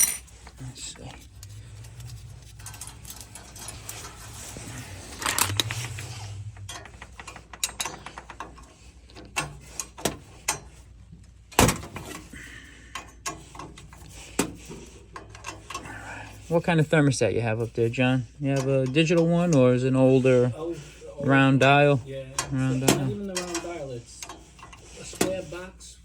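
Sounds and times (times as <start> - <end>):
metallic clinks of hand tools: 0.0 - 0.3
metal scrape: 0.0 - 10.9, 13.1 - 25.9
low steady hum: 0.0 - 25.0.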